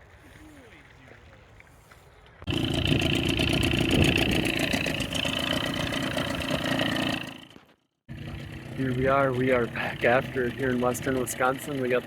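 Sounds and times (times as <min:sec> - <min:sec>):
outboard motor pulsing: 0:02.4 - 0:12.0.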